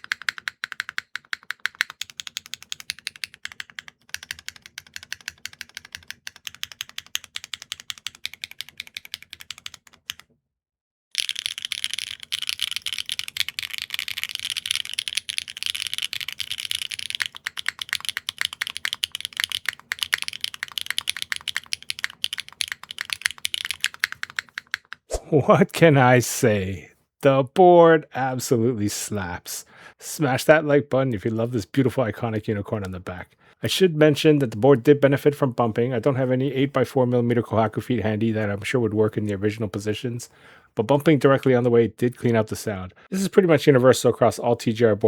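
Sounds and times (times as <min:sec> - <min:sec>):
mechanical keyboard keystroke clacks: 0:00.0 - 0:10.2, 0:11.2 - 0:25.0.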